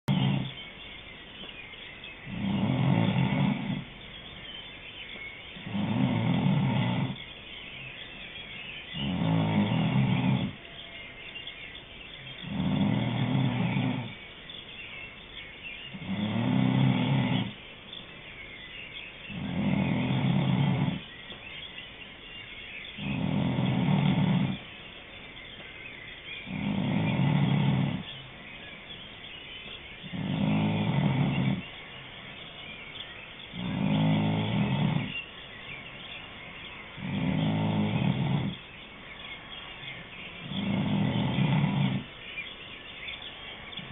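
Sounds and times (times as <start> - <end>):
person snoring: 5.7 - 7.2, 30.1 - 31.6, 40.5 - 42.0.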